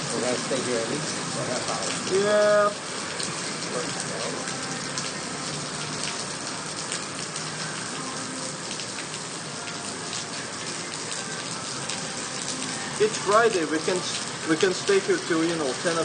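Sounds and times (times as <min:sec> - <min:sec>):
heavy rain pouring: 0:00.0 - 0:16.0
raindrops pattering on surfaces: 0:00.0 - 0:16.0.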